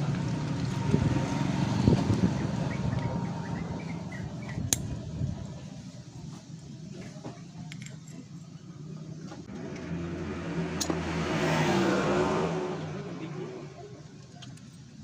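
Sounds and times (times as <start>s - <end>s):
vehicle engine passing by: 0.0s - 4.7s, 9.4s - 14.2s.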